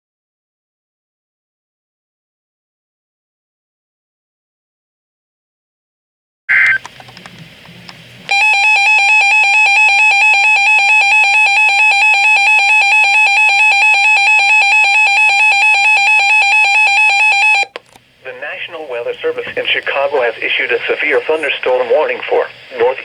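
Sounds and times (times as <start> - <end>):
data-burst chirp: 6.5 - 6.8
harsh emergency alert tone: 6.5 - 6.8, 8.3 - 17.8.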